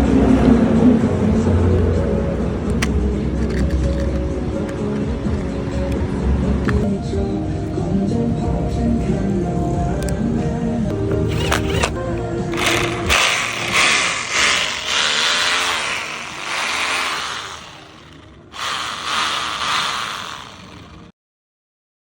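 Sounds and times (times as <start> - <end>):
rotary hammer drill running: 11.2 - 21.1.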